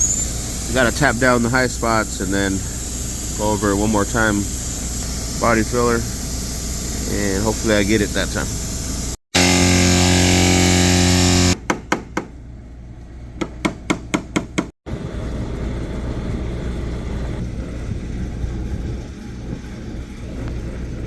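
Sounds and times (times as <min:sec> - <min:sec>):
loud steady machine tone: 0:00.0 - 0:11.6.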